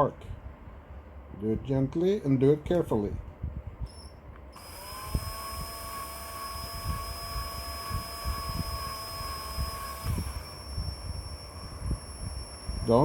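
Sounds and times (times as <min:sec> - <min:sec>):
electric drill whining: 0:04.6 - 0:13.0.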